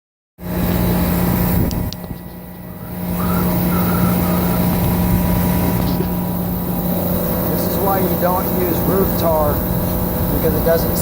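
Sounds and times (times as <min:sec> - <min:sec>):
rumble: 0:00.4 - 0:08.4
low mechanical hum: 0:00.4 - 0:11.0.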